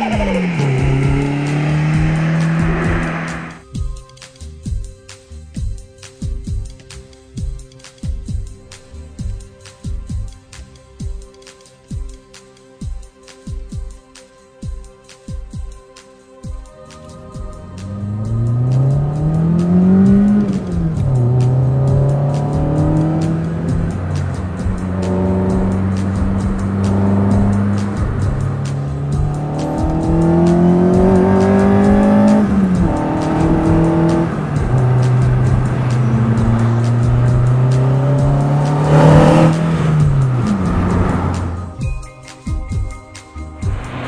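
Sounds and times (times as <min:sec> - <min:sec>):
car engine revving: 0:00.0 - 0:03.6, 0:17.1 - 0:41.8, 0:43.6 - 0:44.0
loud rushing burst: 0:00.0 - 0:03.6.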